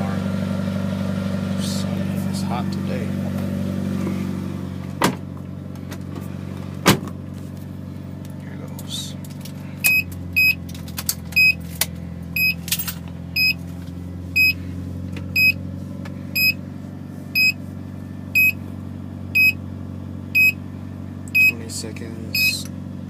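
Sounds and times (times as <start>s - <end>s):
car engine idling: 0.0s - 23.0s
high electronic beep: 9.9s - 10.6s, 11.4s - 11.6s, 12.4s - 12.6s, 13.4s - 13.6s, 14.4s - 14.6s, 15.4s - 15.6s, 16.4s - 16.6s, 17.4s - 17.6s, 18.4s - 18.6s, 19.4s - 19.6s, 20.4s - 20.6s, 21.4s - 21.6s, 22.3s - 22.6s.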